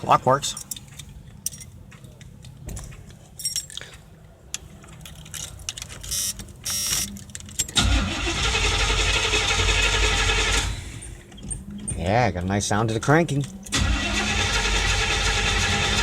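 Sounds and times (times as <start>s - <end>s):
keys jangling: 0.5s - 1.8s, 2.8s - 3.9s, 4.9s - 6.1s
ignition clicks: 5.8s - 11.7s, 13.3s - 15.7s
starter cranking engine: 7.7s - 11.0s, 13.7s - 16.0s.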